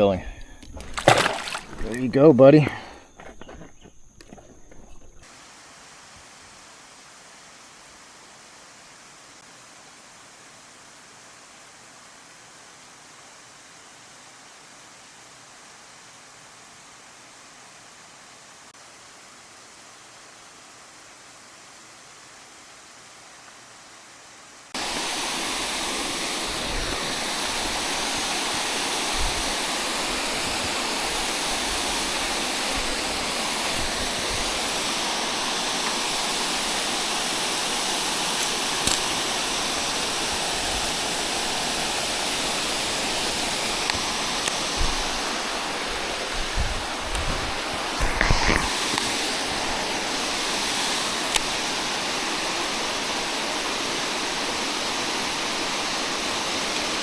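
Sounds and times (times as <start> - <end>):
rushing river water: 0.0 - 3.6, 24.8 - 57.0.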